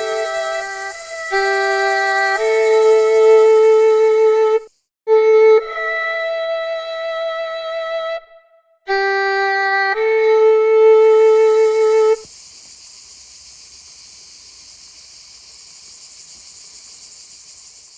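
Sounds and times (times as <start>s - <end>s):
crickets chirring: 0.0s - 5.5s, 8.9s - 17.9s
wind instrument held notes: 0.0s - 12.3s.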